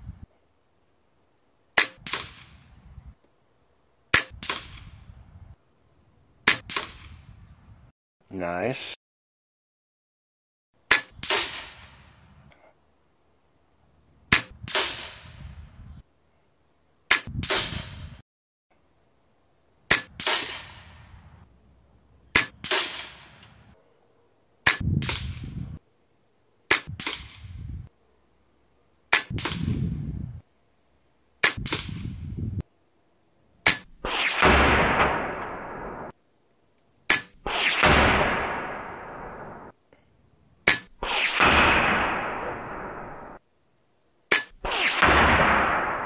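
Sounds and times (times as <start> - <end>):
air rifle shots: 1.8 - 2.7, 4.1 - 5.1, 6.5 - 7.2, 10.9 - 12.1, 14.3 - 15.4, 17.1 - 18.1, 19.9 - 21.2, 22.3 - 23.7, 24.6 - 25.8, 26.7 - 27.8, 29.1 - 30.0, 31.4 - 32.4, 33.6 - 36.1, 37.1 - 39.7, 40.6 - 43.4, 44.3 - 46.0.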